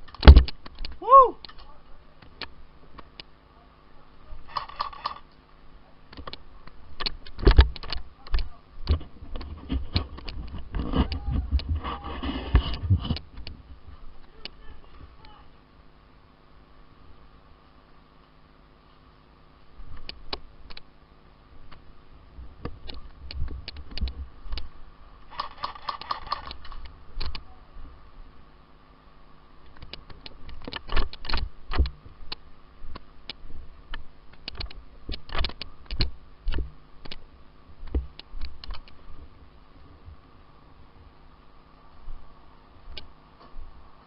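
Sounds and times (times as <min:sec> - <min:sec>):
airsoft guns firing: 0:25.3 - 0:26.8.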